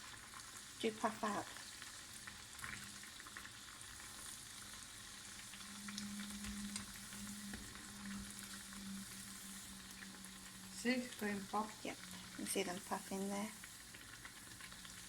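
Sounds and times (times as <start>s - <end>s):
crackles and pops: 0.0s - 15.0s
food deep-frying in oil: 0.0s - 15.0s
low steady hum: 5.2s - 15.0s.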